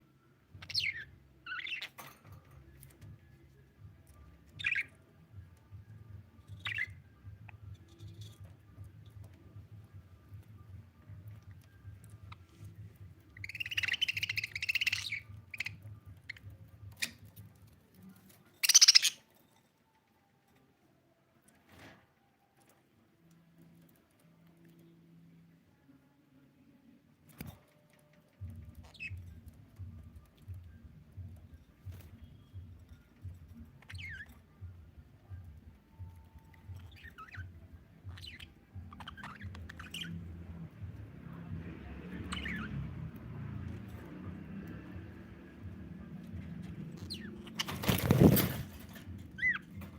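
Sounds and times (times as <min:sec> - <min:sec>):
budgerigar chirping: 0:00.6 - 0:02.0, 0:06.6 - 0:07.0, 0:13.3 - 0:17.2, 0:18.6 - 0:19.2, 0:33.9 - 0:34.3, 0:36.6 - 0:40.2.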